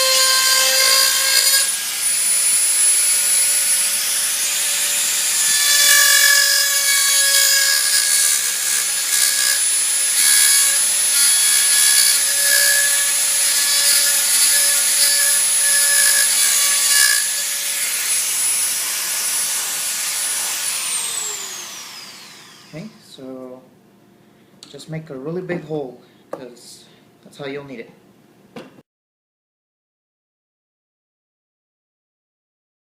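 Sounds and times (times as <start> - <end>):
power drill whining: 0.0 - 23.0.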